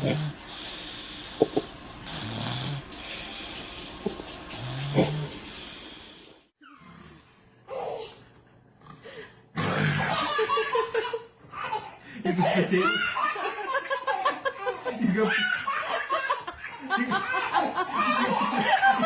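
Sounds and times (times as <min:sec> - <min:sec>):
person snoring: 0:00.0 - 0:03.6, 0:04.5 - 0:07.3.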